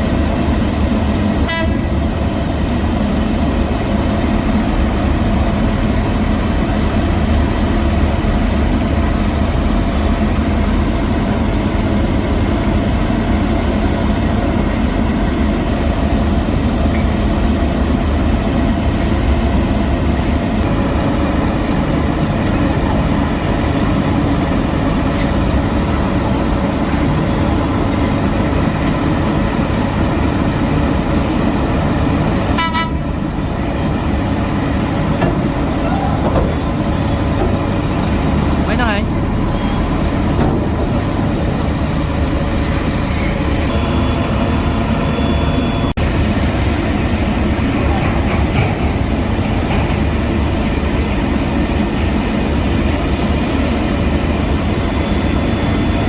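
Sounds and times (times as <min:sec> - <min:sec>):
heavy machinery engines rumbling: 0:00.0 - 0:56.0.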